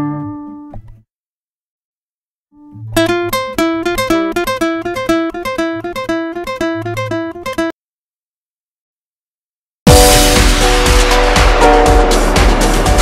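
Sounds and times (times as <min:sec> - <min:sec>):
plucked-string melody: 0:00.0 - 0:01.0, 0:02.6 - 0:07.8.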